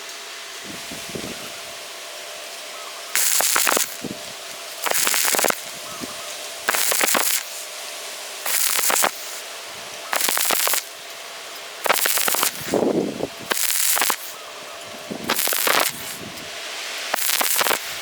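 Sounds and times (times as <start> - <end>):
welding arc crackling: 3.1 - 18.0.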